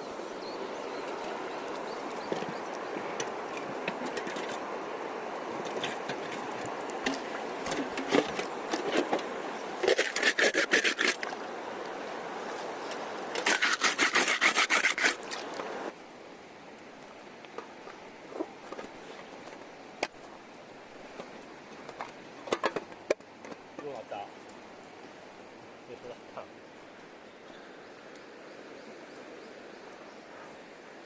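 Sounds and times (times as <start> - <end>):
rapid rubbing strokes: 9.8 - 11.3, 13.4 - 15.4.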